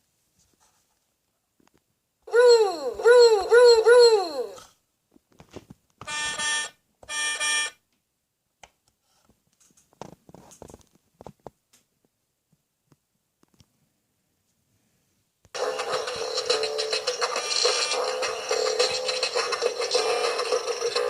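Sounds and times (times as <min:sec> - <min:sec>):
warbling siren-like toy tone: 0:02.3 - 0:04.6.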